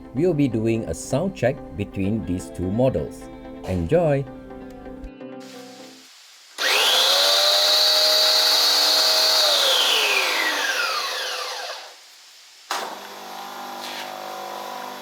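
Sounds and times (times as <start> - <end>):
pressure washer motor whine: 6.6 - 12.1.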